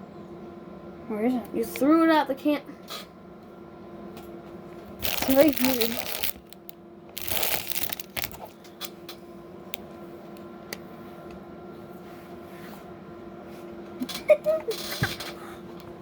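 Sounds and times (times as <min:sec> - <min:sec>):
faint steady hum: 0:00.0 - 0:14.8
plastic pieces clicking: 0:05.0 - 0:08.5
plastic pieces rustling: 0:05.0 - 0:08.6.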